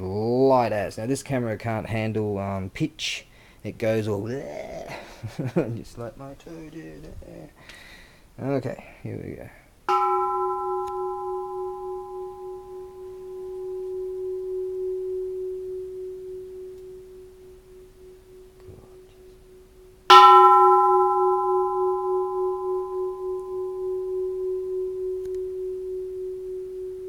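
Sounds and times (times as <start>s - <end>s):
temple bell ringing: 9.9s - 27.0s.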